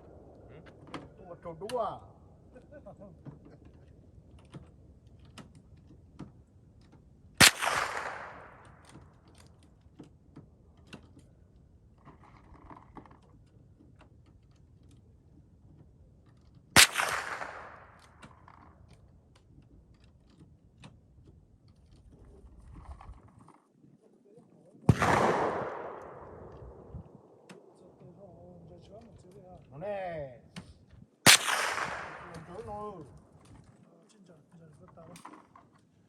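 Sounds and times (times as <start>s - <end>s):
rifle shots echoing: 7.4s - 9.0s, 16.8s - 18.2s, 24.9s - 28.0s, 31.3s - 32.9s.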